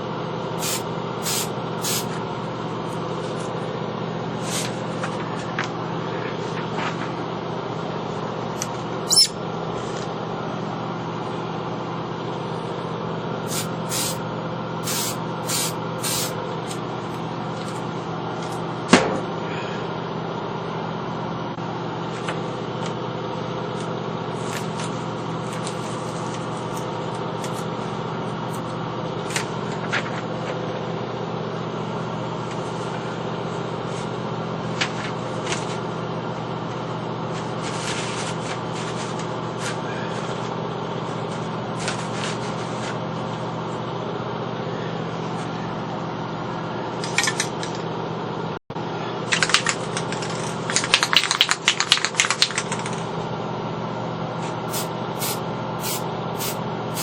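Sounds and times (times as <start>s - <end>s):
low mechanical hum: 0.0s - 57.0s
short hisses: 13.5s - 14.2s.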